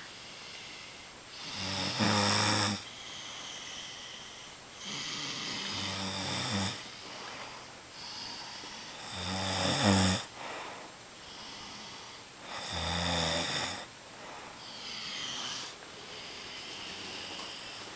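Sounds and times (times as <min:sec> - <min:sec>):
deep snoring: 0:01.4 - 0:04.2, 0:04.8 - 0:06.9, 0:08.0 - 0:10.3, 0:11.4 - 0:13.9, 0:14.6 - 0:17.9.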